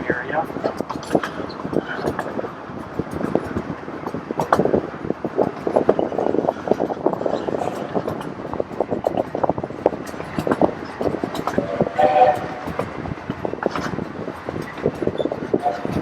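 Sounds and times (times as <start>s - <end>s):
miniature train cars rattling: 0.0s - 16.0s
wind on microphone: 0.0s - 16.0s.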